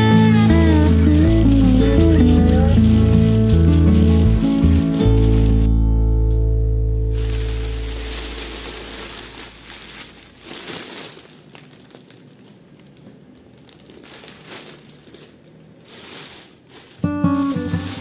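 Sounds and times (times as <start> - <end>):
crinkling and rustling: 0.0 - 6.4, 7.0 - 18.0
background music: 0.0 - 8.6, 17.1 - 18.0.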